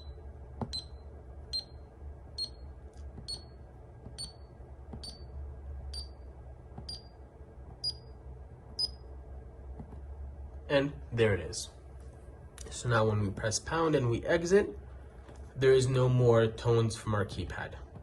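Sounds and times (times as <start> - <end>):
keypad high beeps: 0.0 - 1.8, 4.2 - 4.4.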